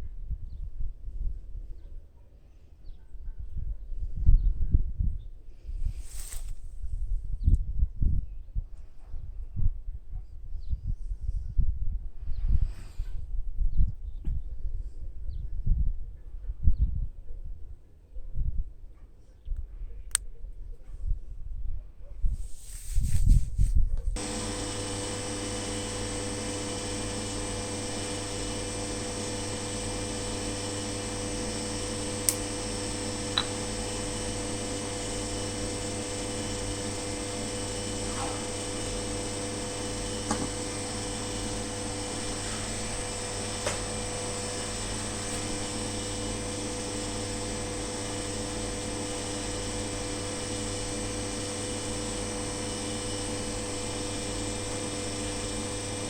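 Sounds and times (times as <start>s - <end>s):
machine hum: 24.2s - 56.0s.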